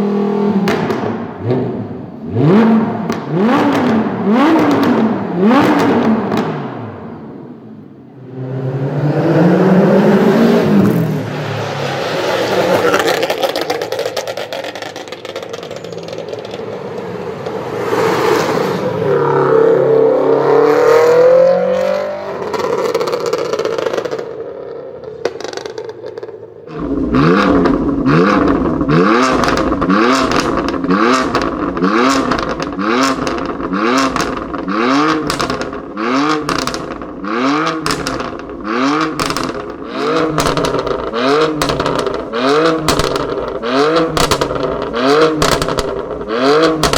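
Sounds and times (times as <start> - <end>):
car engines revving: 0.0 - 46.9
exhaust pops and crackles: 0.6 - 1.3, 3.1 - 6.7, 12.8 - 17.1, 22.5 - 46.9.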